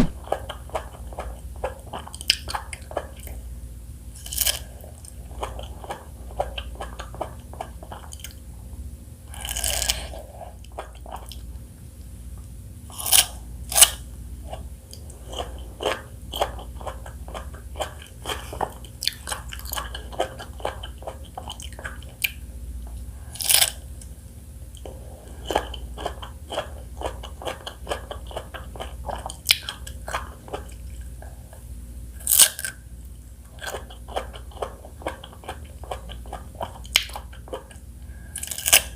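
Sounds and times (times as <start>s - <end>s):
sharp fruit bites: 0.0s - 0.2s
chewing fruit wet crunches: 0.0s - 3.5s, 4.1s - 8.4s, 9.3s - 11.5s, 12.9s - 22.5s, 23.4s - 31.6s, 32.2s - 38.9s.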